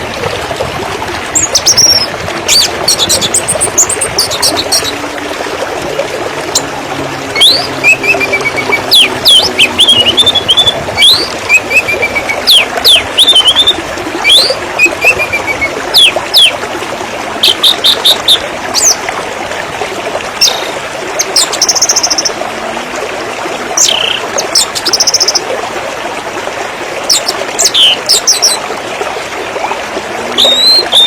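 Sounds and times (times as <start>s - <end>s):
river water flowing: 0.0s - 31.0s
birds chirping: 1.4s - 5.0s, 6.4s - 16.5s, 29.6s - 31.0s.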